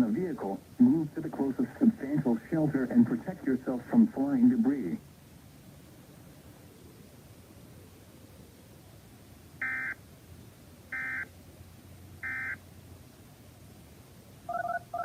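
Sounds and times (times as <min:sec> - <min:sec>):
electronic beeps: 0:09.6 - 0:10.0, 0:11.0 - 0:11.3, 0:12.2 - 0:12.6, 0:14.5 - 0:15.0.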